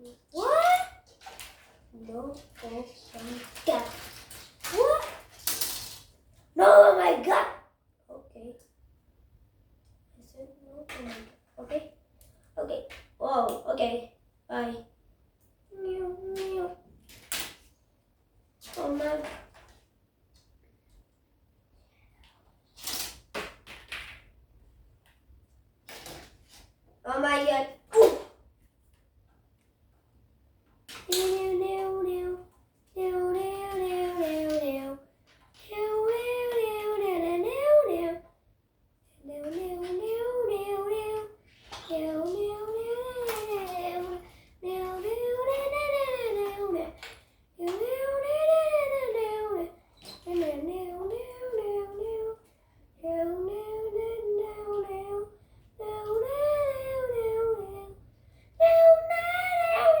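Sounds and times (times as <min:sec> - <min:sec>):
child singing: 0:02.0 - 0:05.2, 0:15.7 - 0:16.9, 0:31.0 - 0:38.3, 0:39.1 - 0:58.0, 0:58.6 - 1:00.0.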